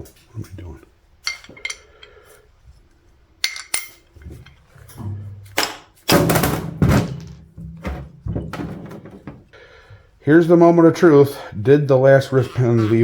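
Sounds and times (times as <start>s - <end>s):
metal engine parts clinking: 1.2s - 2.5s, 3.4s - 6.0s.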